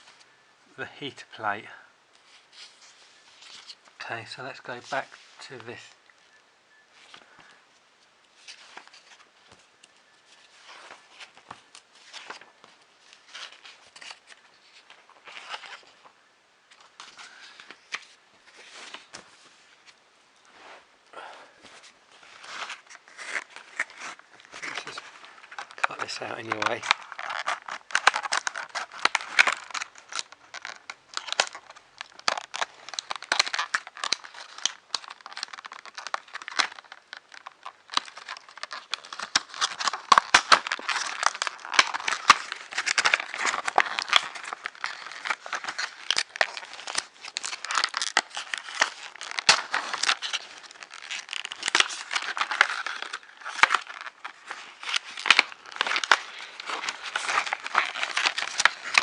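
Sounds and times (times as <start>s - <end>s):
packaging crinkling and tearing: 8.4s - 16.1s, 22.2s - 59.0s.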